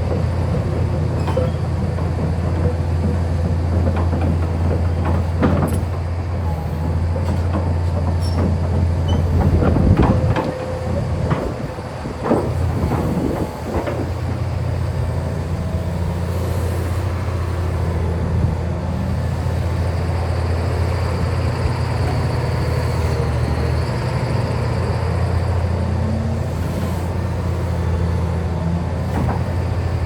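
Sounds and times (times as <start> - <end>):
excavator diesel engine droning: 0.0 - 30.0
metallic clanks and knocks: 0.1 - 6.0.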